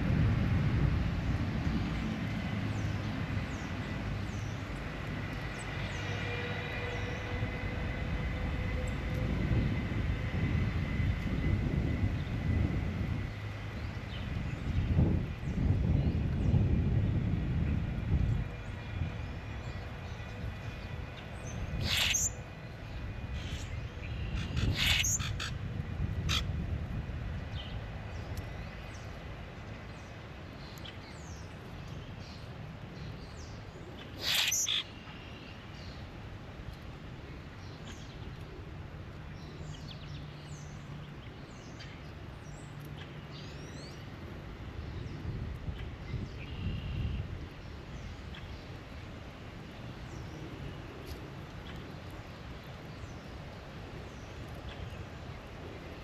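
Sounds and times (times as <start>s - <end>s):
low steady background rumble: 0.0s - 6.1s
loud bird calls: 21.5s - 22.4s, 23.4s - 25.6s, 34.0s - 35.4s.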